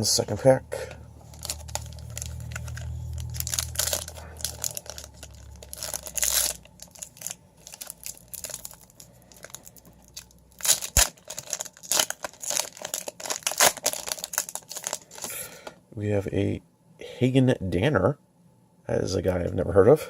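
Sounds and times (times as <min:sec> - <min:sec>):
low hum: 0:00.0 - 0:11.7
wrapper tearing and crinkling: 0:01.2 - 0:15.3.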